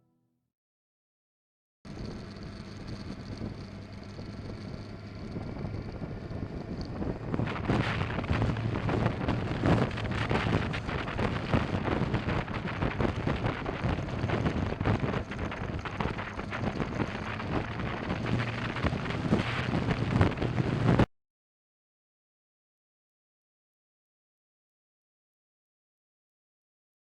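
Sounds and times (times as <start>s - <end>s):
motorcycle engine drone: 1.9s - 21.1s
wind rushing over microphone: 1.9s - 21.1s.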